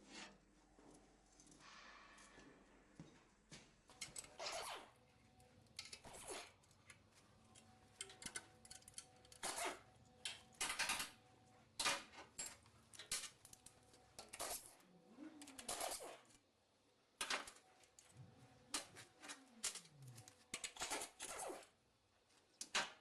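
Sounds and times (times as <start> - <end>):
metal parts clinking: 7.5 - 9.8.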